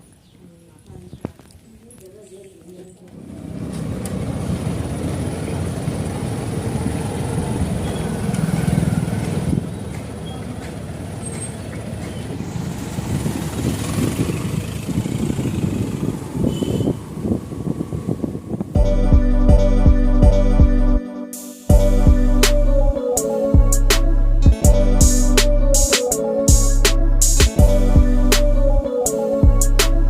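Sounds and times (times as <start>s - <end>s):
vehicle rumbling on road: 3.1s - 18.8s
wind gusting on microphone: 6.4s - 9.9s, 12.1s - 18.8s.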